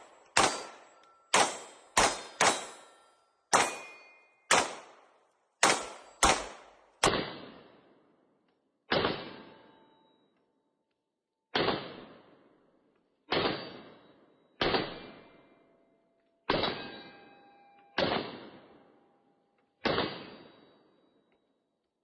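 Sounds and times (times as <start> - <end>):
steel target plates ringing: 0.0 - 4.6, 16.6 - 18.0
pistol shots: 0.0 - 7.9, 8.9 - 9.6, 11.5 - 12.5, 18.0 - 18.7, 19.8 - 20.7.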